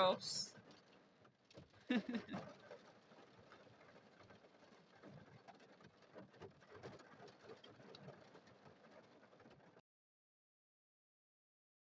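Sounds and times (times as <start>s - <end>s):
rain pattering on a car: 0.5s - 9.8s.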